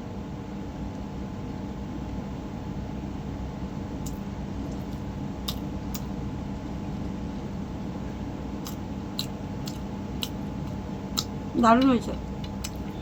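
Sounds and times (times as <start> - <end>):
low background hum: 0.0 - 13.0
person chewing food: 4.0 - 6.2, 8.6 - 13.0.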